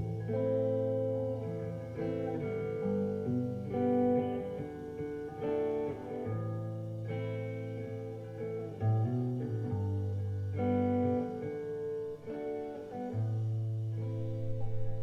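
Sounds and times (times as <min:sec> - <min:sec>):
strummed and plucked guitar: 0:00.0 - 0:15.0.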